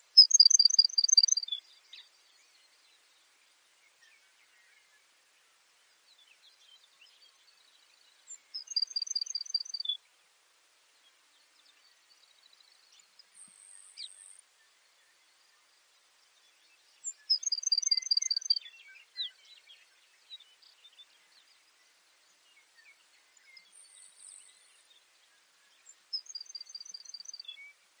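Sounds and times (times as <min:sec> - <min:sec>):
soft bird chirps: 0:00.0 - 0:28.0
sparrow singing: 0:00.1 - 0:02.5, 0:08.3 - 0:10.0, 0:16.5 - 0:21.4, 0:25.7 - 0:27.7.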